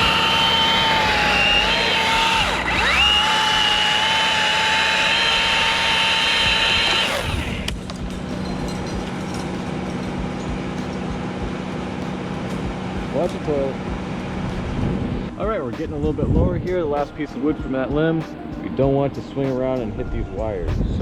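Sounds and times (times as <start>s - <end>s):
electric chainsaw whining: 0.0s - 8.4s.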